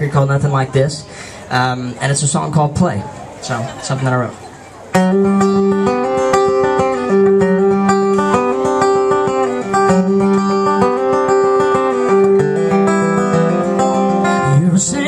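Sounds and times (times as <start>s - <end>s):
acoustic guitar picking: 3.6s - 15.0s.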